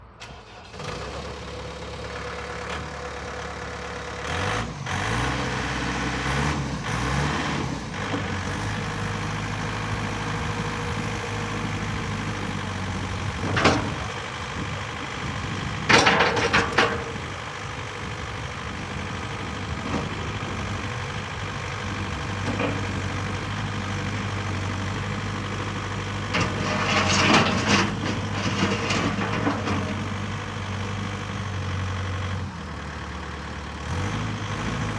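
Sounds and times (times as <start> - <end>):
diesel engine running: 0.0 - 34.9
metal clanks and rattles: 13.2 - 14.7, 15.7 - 17.4, 22.4 - 23.3, 26.2 - 30.3.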